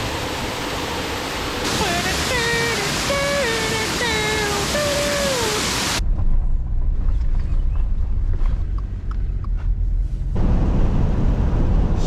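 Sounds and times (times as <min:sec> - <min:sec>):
car driving rumble inside cabin: 0:05.9 - 0:12.0.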